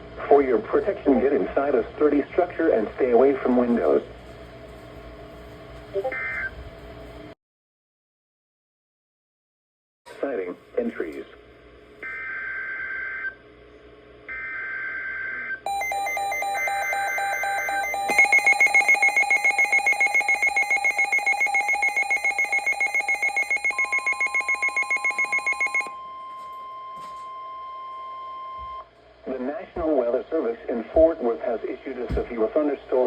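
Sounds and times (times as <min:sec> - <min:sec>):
electronic alarm beeping: 0:15.2 - 0:28.9
steady warning alarm tone: 0:15.7 - 0:28.9.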